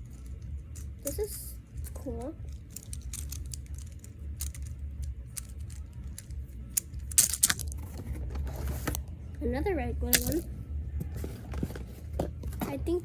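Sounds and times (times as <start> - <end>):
plastic toys clattering: 0.0 - 9.0, 10.1 - 10.5
plastic toys clicking and rattling: 0.0 - 9.0, 10.1 - 10.5.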